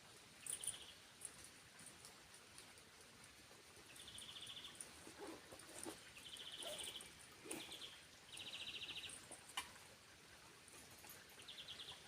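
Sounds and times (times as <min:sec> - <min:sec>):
faint high bird chirps: 0:03.9 - 0:04.8, 0:06.2 - 0:09.2.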